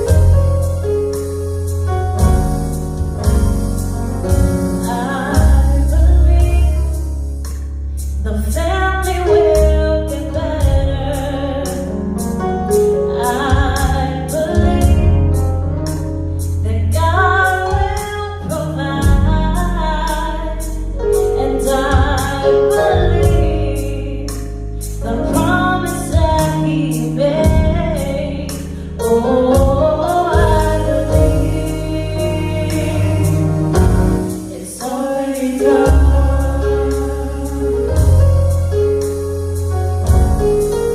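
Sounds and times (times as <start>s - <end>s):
band with deep bass: 0.0s - 40.9s
person singing: 34.4s - 38.2s.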